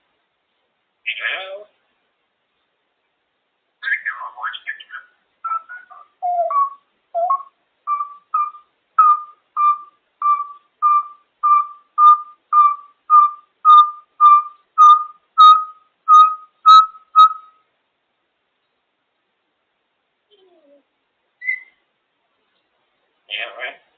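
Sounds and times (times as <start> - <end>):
parrot whistling short notes: 5.5 - 17.6, 21.4 - 21.8.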